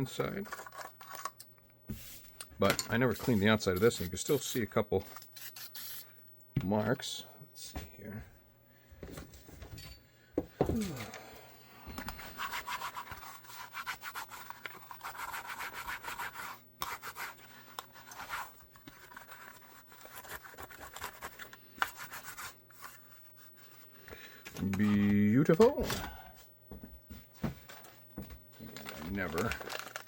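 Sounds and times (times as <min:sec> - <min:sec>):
rapid rubbing on holster: 0:12.2 - 0:23.8.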